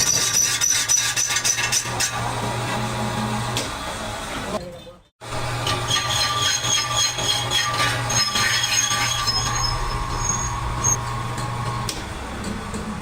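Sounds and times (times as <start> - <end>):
metal on metal squealing: 5.6 - 11.0.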